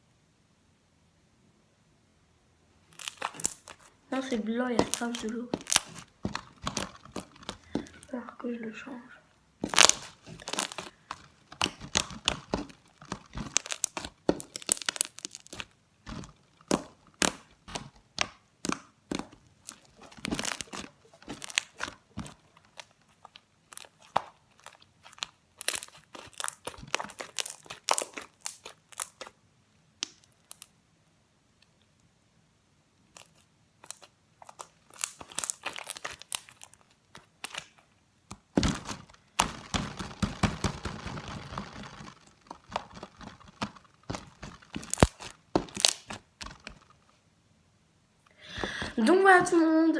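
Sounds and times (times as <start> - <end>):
slime squeezed and stretched by hand: 2.9 - 8.2, 9.6 - 29.4, 33.1 - 47.1.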